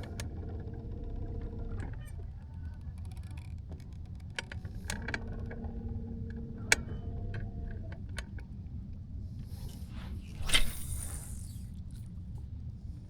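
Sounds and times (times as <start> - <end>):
low steady rumble: 0.0 - 3.0, 4.5 - 13.0
hum changing pitch: 9.5 - 11.8
fishing reel clicks: 9.6 - 11.7.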